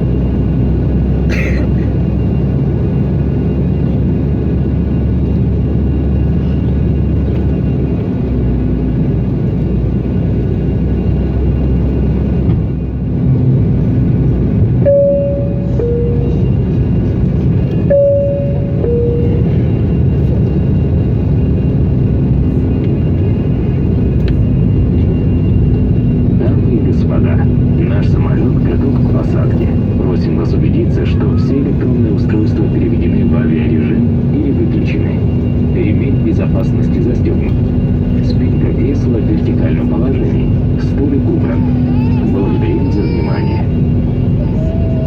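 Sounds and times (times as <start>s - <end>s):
airliner cabin engine rumble: 0.0s - 45.0s
two-tone cabin chime: 14.8s - 16.7s, 17.8s - 19.8s.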